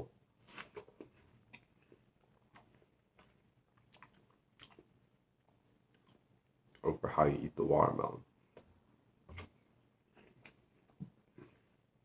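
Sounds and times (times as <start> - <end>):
chewing watermelon: 0.4 - 5.1.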